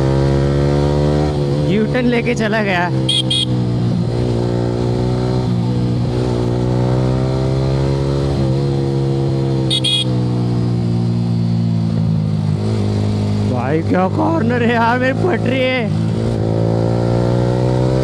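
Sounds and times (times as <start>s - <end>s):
motorcycle engine cruising: 0.0s - 18.0s
horn beeps: 3.0s - 3.6s, 9.7s - 10.1s.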